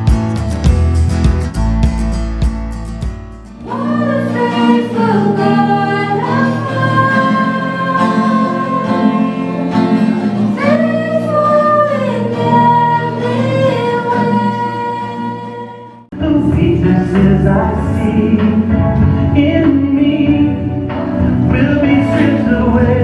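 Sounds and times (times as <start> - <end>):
instrumental accompaniment: 0.0 - 13.4
person singing long held notes: 3.6 - 23.0.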